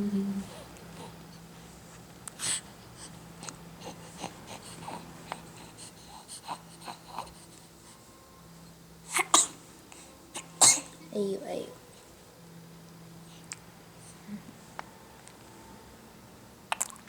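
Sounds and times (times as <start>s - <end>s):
baby snuffling and wheezing: 2.4s - 7.8s
baby snorting or sneezing: 9.1s - 9.6s, 10.4s - 11.0s.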